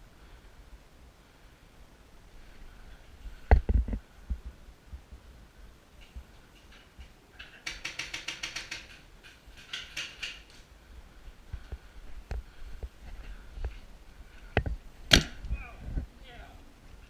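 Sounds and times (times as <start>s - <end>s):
paintball markers firing: 15.1s - 15.4s.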